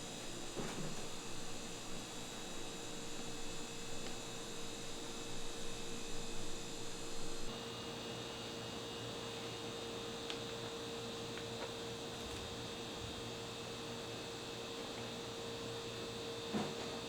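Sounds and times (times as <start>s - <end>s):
electrical hum: 0.0s - 8.1s.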